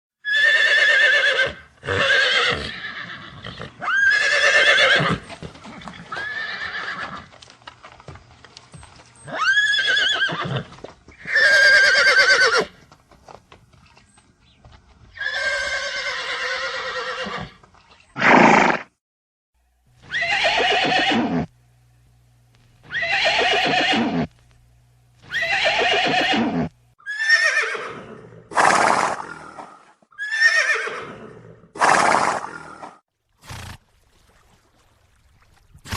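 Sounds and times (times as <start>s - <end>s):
horse neighing and whinnying: 0.2s - 7.3s, 9.2s - 12.8s, 15.2s - 17.6s, 18.2s - 18.9s, 20.0s - 21.5s, 22.9s - 24.3s, 25.3s - 33.8s.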